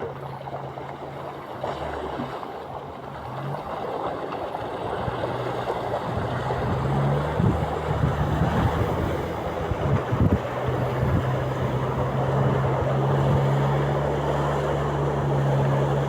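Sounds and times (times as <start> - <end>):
water wash: 0.0 - 16.0
vehicle engine running: 5.7 - 16.0
wind noise: 6.2 - 13.8.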